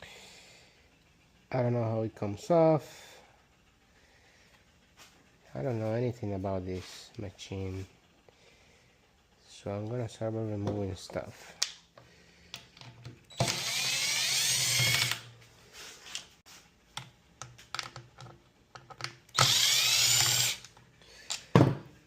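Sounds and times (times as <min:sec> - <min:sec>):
small clicks of parts and tools: 0:11.5 - 0:13.6, 0:16.9 - 0:19.6, 0:20.2 - 0:21.6
power drill spinning fasteners: 0:13.2 - 0:15.3, 0:19.3 - 0:20.8.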